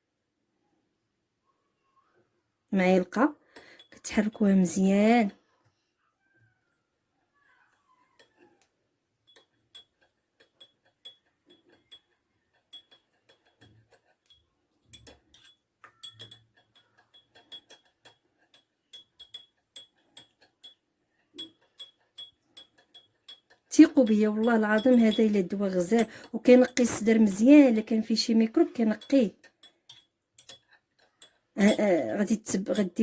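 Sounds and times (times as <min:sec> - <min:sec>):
spoon clinking against glass: 0:09.2 - 0:20.8, 0:21.4 - 0:33.0.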